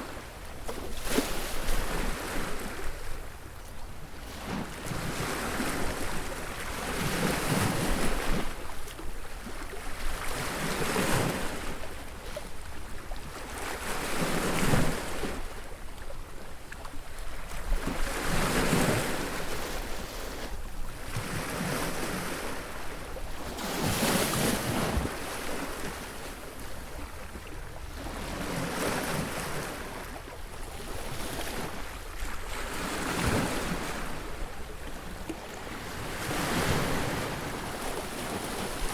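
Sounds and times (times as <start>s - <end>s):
ocean waves breaking: 17.4s - 38.9s.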